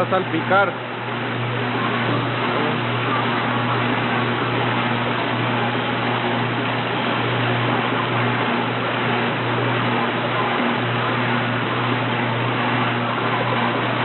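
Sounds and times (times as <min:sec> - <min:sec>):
motor hum: 0:00.0 - 0:14.0.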